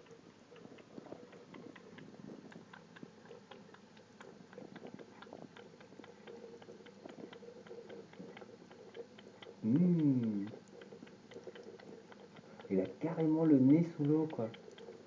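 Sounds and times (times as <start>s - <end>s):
cat lapping water: 0.1s - 15.0s
person's voice: 9.6s - 10.5s, 12.7s - 14.6s.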